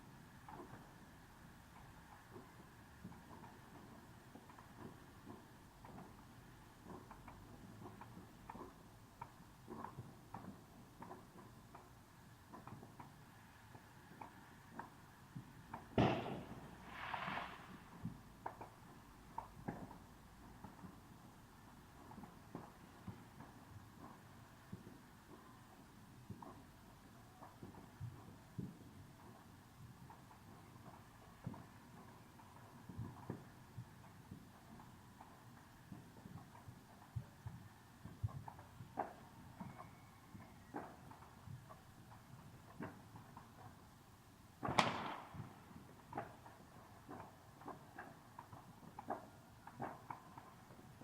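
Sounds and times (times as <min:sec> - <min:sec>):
distant fireworks thuds: 0:00.0 - 0:51.0
faint firework pops: 0:12.5 - 0:21.0, 0:44.6 - 0:51.0
firework bang: 0:15.9 - 0:17.9, 0:44.6 - 0:45.5
firework hissing: 0:16.3 - 0:17.9.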